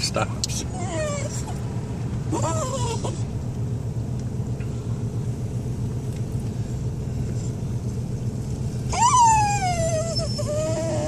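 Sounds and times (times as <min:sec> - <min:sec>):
car rumbling from inside: 0:00.0 - 0:11.0
dog whining: 0:00.7 - 0:01.6, 0:02.3 - 0:03.3, 0:08.9 - 0:11.0.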